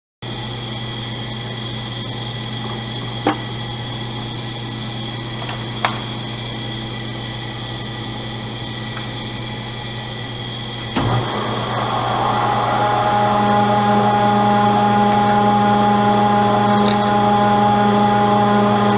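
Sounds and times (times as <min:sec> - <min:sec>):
metal lathe motor hum: 0:00.3 - 0:18.9
rough grinding noise: 0:11.3 - 0:18.9.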